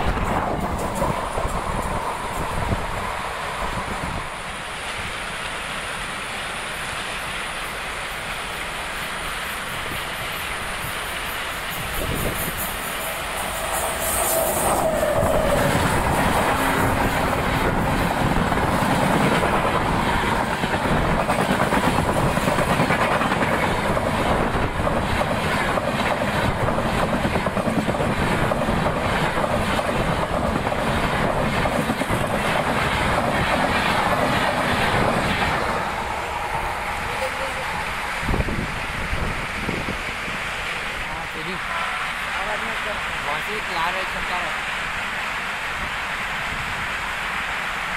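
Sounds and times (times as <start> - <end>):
clickety-clack over rail joints: 0.0 - 5.6, 14.8 - 37.4
train wheels rushing on rail: 0.0 - 47.9.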